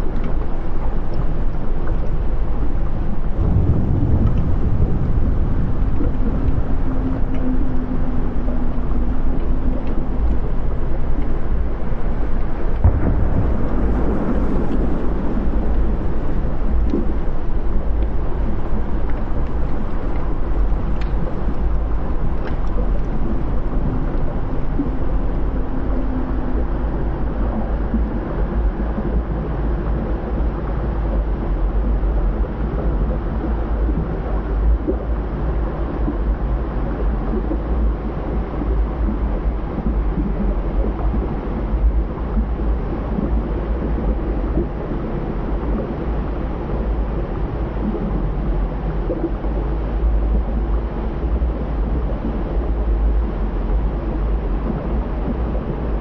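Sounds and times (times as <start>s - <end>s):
dense rushing noise: 0.0s - 30.2s
lava crackling: 0.0s - 31.0s
deep volcanic rumble: 0.0s - 56.0s.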